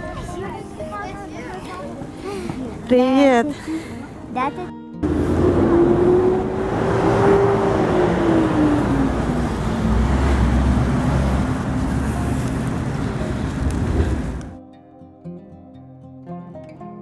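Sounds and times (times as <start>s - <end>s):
traffic rumble: 1.5s - 14.6s
vehicle passing: 5.0s - 14.6s
wind noise: 5.0s - 14.6s.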